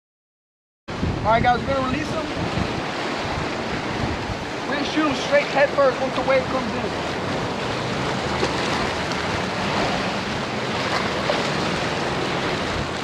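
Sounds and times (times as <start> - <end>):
surf breaking on beach: 0.9 - 13.0
wind on microphone: 0.9 - 13.0.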